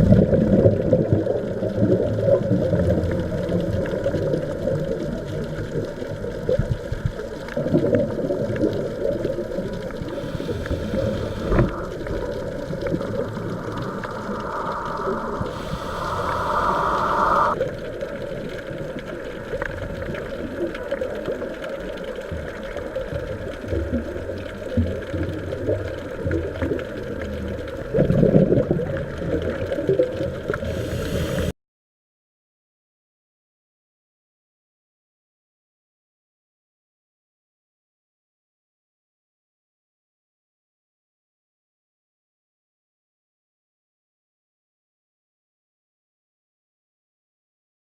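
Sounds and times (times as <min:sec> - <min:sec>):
gurgling bubble bursts: 0:00.0 - 0:31.5
underwater rumble with crackles: 0:00.0 - 0:31.5.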